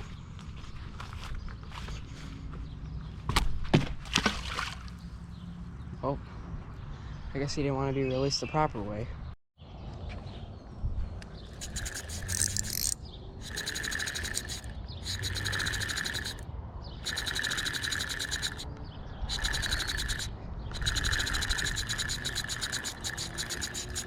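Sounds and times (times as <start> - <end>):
animal calling in pulsed trills: 11.6 - 16.4, 17.0 - 18.7, 19.3 - 24.0.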